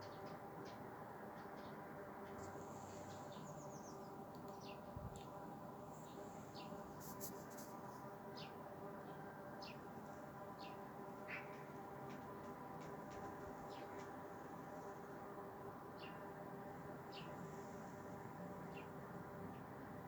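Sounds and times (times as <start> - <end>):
small birds chirping: 0.0 - 7.7, 8.3 - 9.9, 10.6 - 14.2, 15.9 - 16.3, 17.0 - 17.6, 18.6 - 19.8
faint steady multi-tone hum: 0.0 - 20.0.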